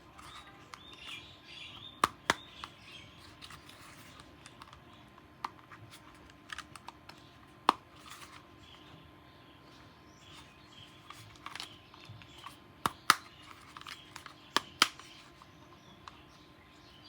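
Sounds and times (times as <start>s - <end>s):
sharp plastic clicks: 11.1s - 15.4s.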